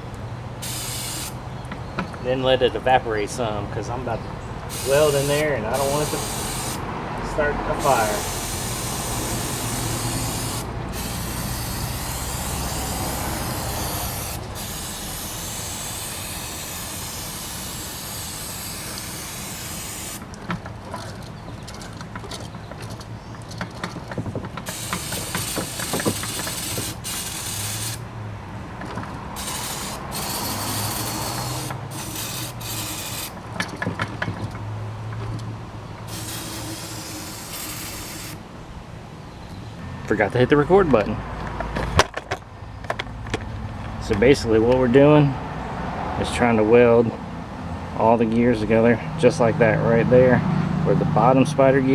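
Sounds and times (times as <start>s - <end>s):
aerosol spray hissing: 0.6s - 1.4s, 4.7s - 6.8s, 7.8s - 20.2s, 24.7s - 28.0s, 29.4s - 33.4s, 36.1s - 38.4s
clicks and knocks of handled parts: 20.2s - 26.9s, 28.7s - 29.2s, 33.4s - 36.1s, 40.8s - 44.0s.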